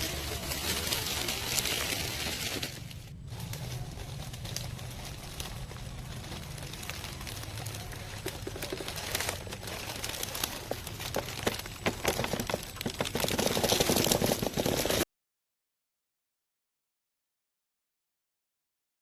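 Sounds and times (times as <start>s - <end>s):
low motor hum: 0.0s - 13.5s
tyres crunching over loose ground: 0.0s - 15.0s.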